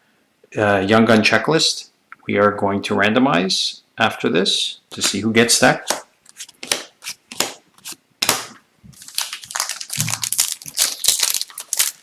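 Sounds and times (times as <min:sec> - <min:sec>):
card packs clicking: 0:05.8 - 0:12.0
card packs crinkling and rustling: 0:05.8 - 0:12.0.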